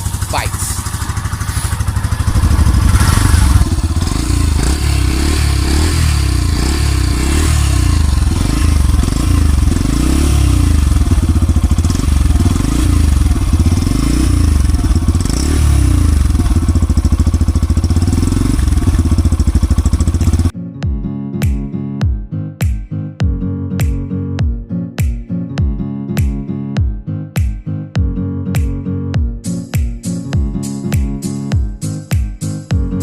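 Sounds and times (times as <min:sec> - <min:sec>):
motorcycle engine idling: 0:00.0 - 0:20.5.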